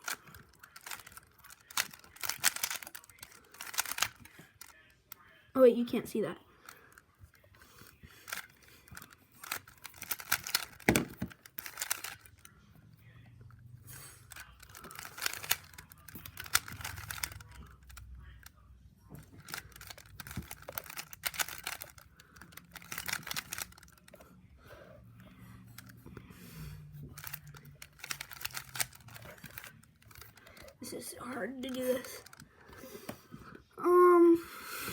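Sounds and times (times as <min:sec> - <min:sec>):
puzzle cube plastic clicking: 0:00.0 - 0:04.9, 0:07.9 - 0:12.5, 0:14.2 - 0:18.6, 0:19.2 - 0:24.2, 0:27.0 - 0:33.2.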